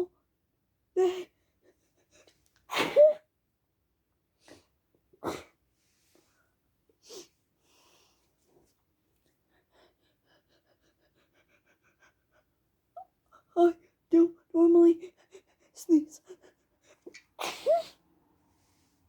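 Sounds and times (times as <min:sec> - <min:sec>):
person sneezing: 0:02.7 - 0:03.2, 0:17.4 - 0:18.0.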